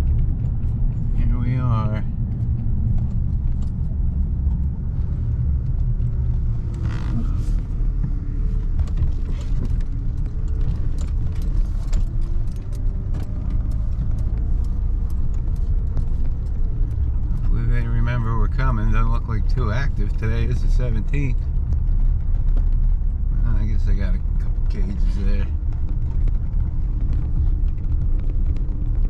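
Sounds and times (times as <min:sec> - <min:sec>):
small ticks and rattles: 0:00.0 - 0:29.0
vehicle driving low rumble: 0:00.0 - 0:29.0.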